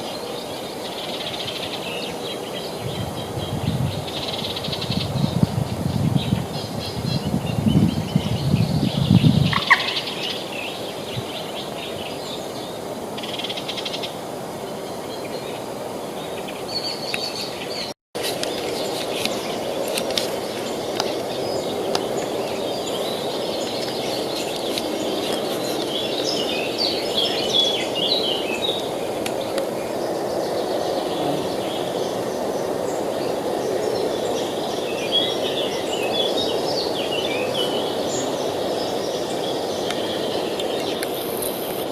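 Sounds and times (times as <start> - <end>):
small birds chirping: 16.2 - 41.8.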